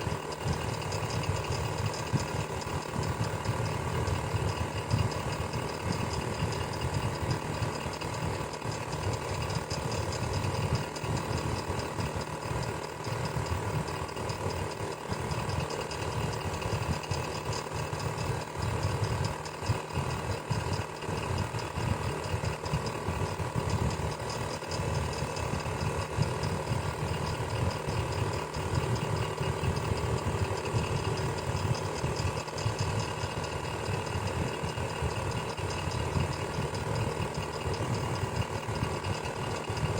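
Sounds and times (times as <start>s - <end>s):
electric fan running: 0.0s - 39.9s.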